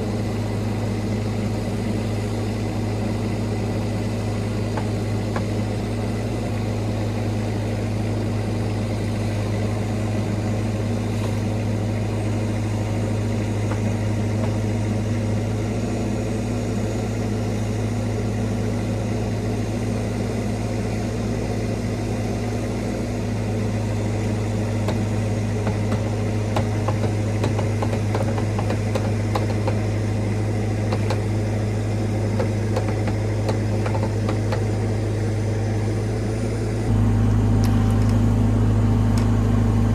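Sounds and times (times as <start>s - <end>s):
mini excavator diesel engine running: 0.0s - 39.9s
small knocks and clicks: 12.9s - 14.9s, 24.8s - 30.0s, 30.8s - 31.3s, 32.3s - 34.8s.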